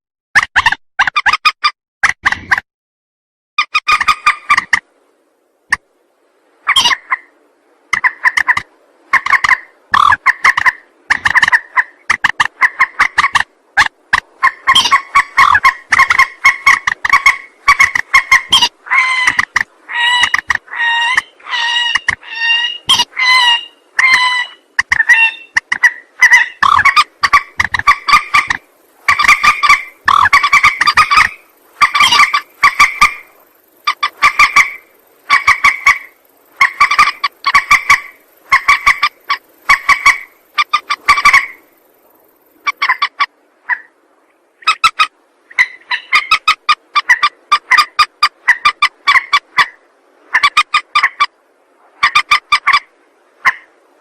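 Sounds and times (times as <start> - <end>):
rapid pitched bird calls: 8.0 - 43.2.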